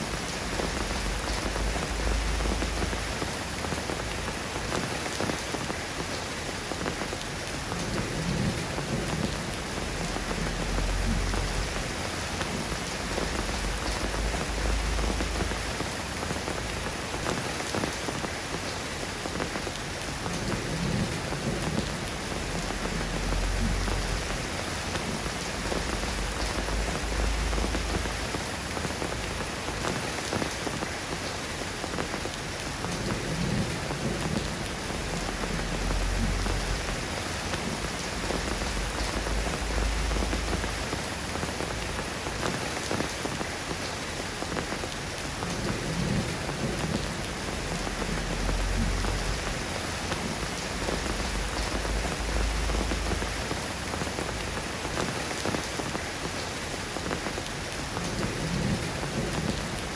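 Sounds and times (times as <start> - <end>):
rain falling: 0.0 - 59.9
low rumbles: 21.5 - 28.5, 33.7 - 42.0, 45.8 - 54.9.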